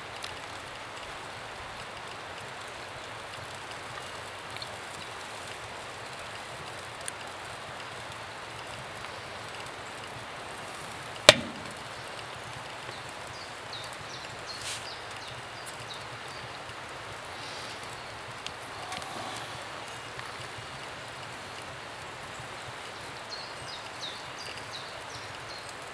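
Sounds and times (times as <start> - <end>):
fire crackling hiss: 0.0 - 25.9
small ticks: 0.0 - 25.9
sharp knock: 11.3 - 11.9.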